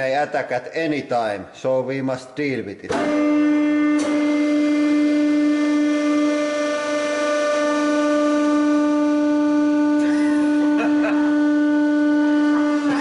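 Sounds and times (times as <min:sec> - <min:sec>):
hydraulic press droning: 0:02.9 - 0:13.0.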